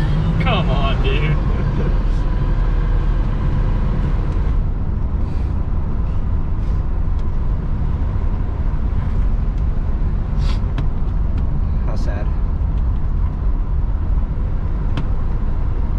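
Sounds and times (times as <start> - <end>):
car engine at full throttle: 0.0 - 15.9.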